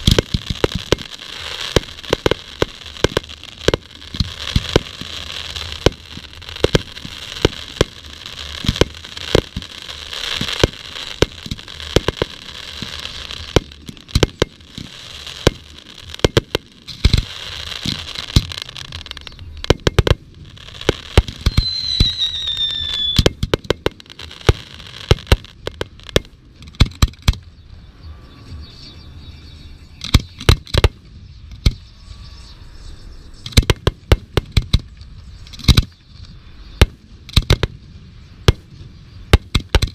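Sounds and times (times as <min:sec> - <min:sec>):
fireworks bangs: 0:00.0 - 0:27.5, 0:33.4 - 0:36.0
fireworks crackle: 0:00.0 - 0:27.5, 0:30.0 - 0:32.3, 0:33.4 - 0:39.9
high whistle: 0:21.4 - 0:23.3.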